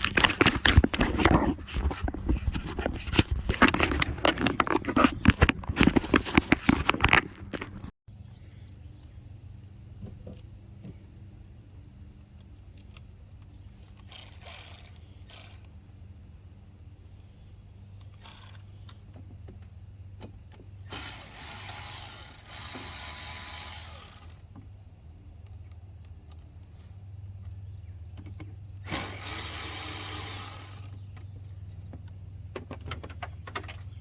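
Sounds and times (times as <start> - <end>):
ratchet clicking: 14.0 - 15.7, 18.1 - 18.7.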